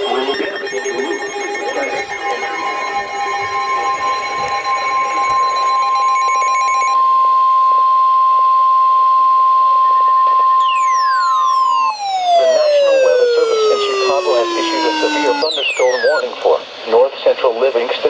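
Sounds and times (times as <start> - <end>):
high steady alarm beep: 0.0 - 7.0, 10.6 - 16.2
tone sliding down in pitch: 10.6 - 16.2.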